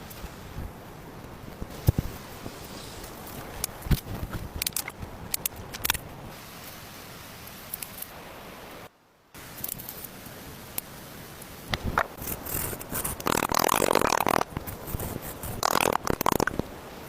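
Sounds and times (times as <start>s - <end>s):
rough rasping scrapes: 12.2s - 16.2s.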